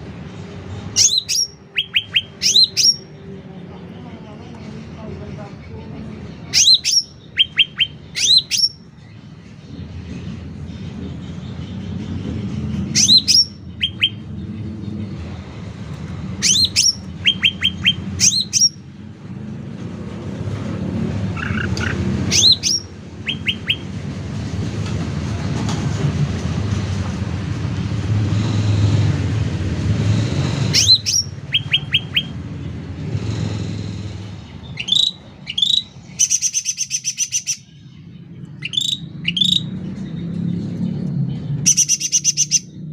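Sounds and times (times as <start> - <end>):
bird calling loudly: 1.0 - 3.2, 6.5 - 8.9, 13.0 - 14.2, 16.4 - 18.8, 21.3 - 24.0, 30.6 - 32.4, 34.6 - 37.7, 38.6 - 39.7, 41.7 - 42.7.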